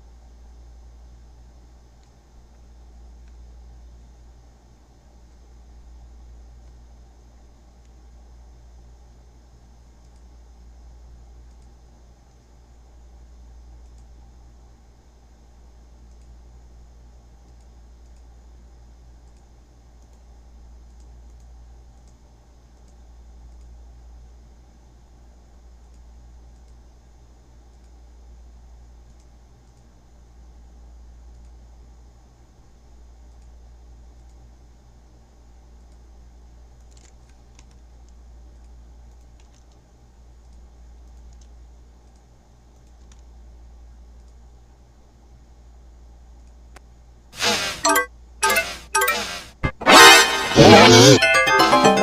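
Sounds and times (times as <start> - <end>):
steady low hum: 0.0 - 52.0
mouse and keyboard clicks: 36.8 - 37.8, 38.6 - 39.8
keyboard and mouse clicks: 36.8 - 39.8, 40.4 - 43.3.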